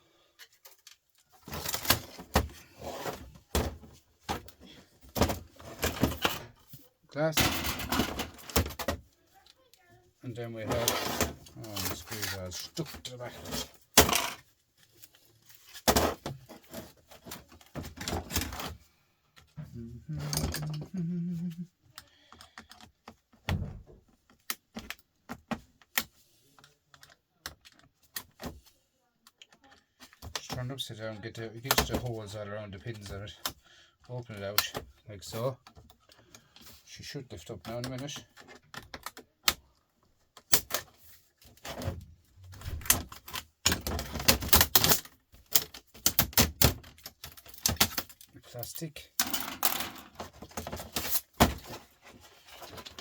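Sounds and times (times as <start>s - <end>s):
plastic parts clicking and clattering: 0.2s - 53.0s
small parts clinking: 47.0s - 51.3s.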